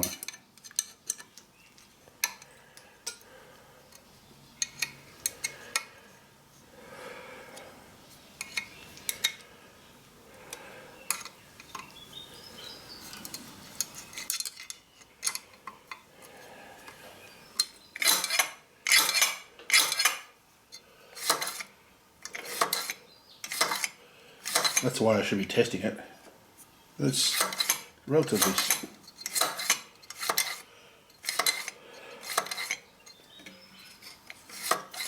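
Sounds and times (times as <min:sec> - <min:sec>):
metal tools clinking: 0:00.0 - 0:01.5, 0:13.1 - 0:16.0, 0:17.6 - 0:20.3, 0:21.2 - 0:25.0, 0:27.2 - 0:35.0.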